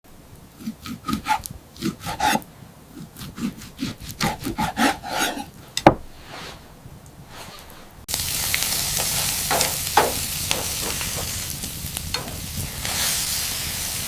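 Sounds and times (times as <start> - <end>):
rubbing and scraping strokes: 0.6 - 2.4, 3.0 - 8.1.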